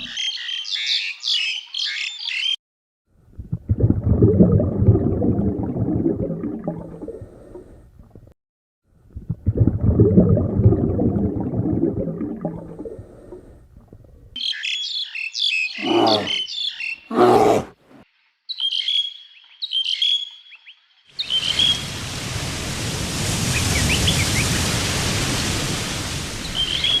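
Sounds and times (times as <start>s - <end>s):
low rough rumbling animal call: 15.8s - 16.4s.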